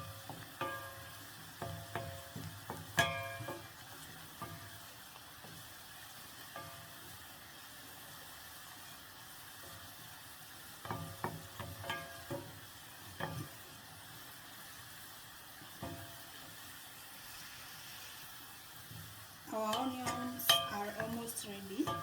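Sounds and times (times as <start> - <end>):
spoon knocking and scraping pot: 0.0 - 4.7, 10.8 - 12.6, 19.7 - 22.0
onions sizzling in oil: 0.0 - 22.0.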